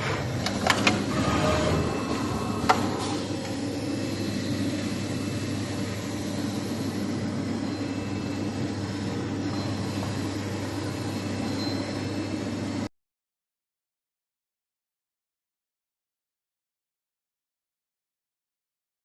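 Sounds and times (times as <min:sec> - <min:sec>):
sewing machine running: 0:00.0 - 0:03.3.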